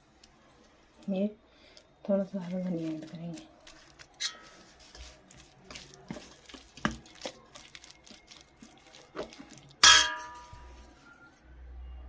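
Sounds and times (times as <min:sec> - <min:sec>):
spoon stirring thick batter: 0:01.6 - 0:10.0
loud ringing clang: 0:09.8 - 0:10.8.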